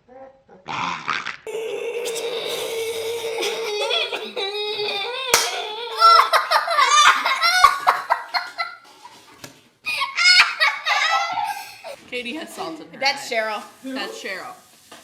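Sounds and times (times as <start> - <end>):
girls giggling and laughing: 2.2 - 8.8, 9.9 - 12.0.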